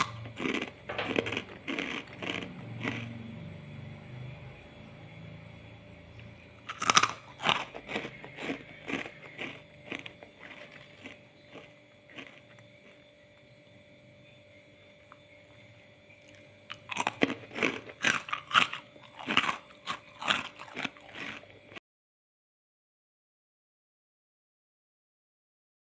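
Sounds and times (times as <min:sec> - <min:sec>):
crunching crackers: 0:00.0 - 0:03.4, 0:06.2 - 0:13.5, 0:16.2 - 0:21.8.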